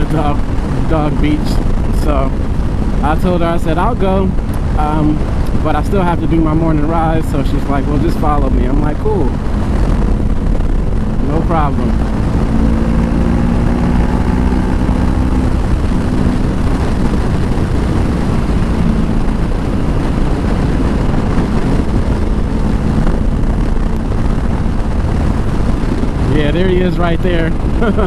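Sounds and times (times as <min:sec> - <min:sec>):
motorcycle engine running: 0:00.0 - 0:28.0
wind rush on microphone: 0:00.0 - 0:28.0.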